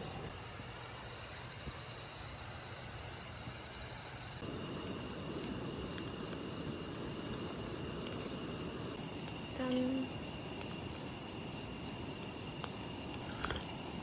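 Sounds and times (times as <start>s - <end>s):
insect high-pitched buzzing: 0.0s - 14.0s.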